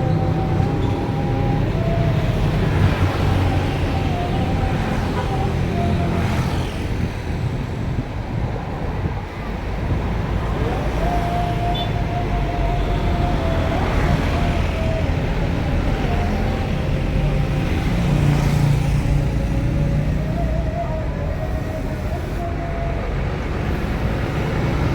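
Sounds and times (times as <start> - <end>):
heavy road traffic rumble: 0.0 - 24.9.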